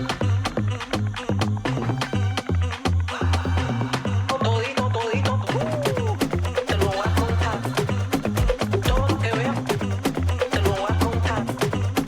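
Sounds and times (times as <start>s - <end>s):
upbeat afrobeat music: 0.0s - 12.0s.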